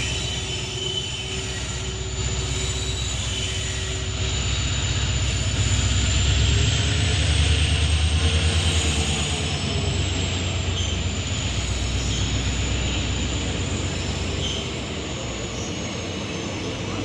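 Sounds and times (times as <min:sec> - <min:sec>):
diesel locomotive rumble: 0:00.0 - 0:17.0
high whine: 0:00.0 - 0:17.0.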